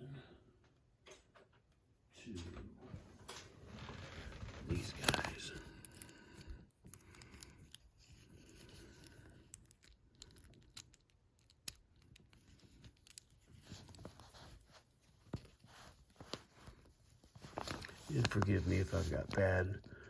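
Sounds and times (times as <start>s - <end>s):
lock pick scratching and clicking: 5.8s - 14.2s.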